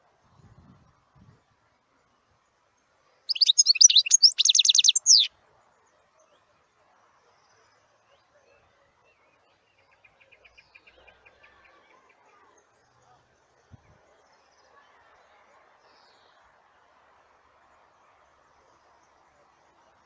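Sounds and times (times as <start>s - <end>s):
bird chips: 3.3s - 5.3s
bird twittering and trilling: 3.3s - 5.3s.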